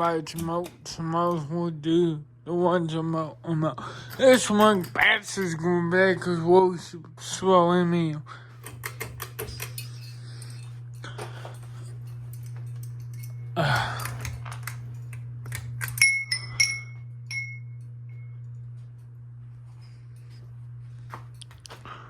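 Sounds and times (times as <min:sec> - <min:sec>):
low hum: 0:00.0 - 0:22.0
metal or glass clinks: 0:16.0 - 0:17.8.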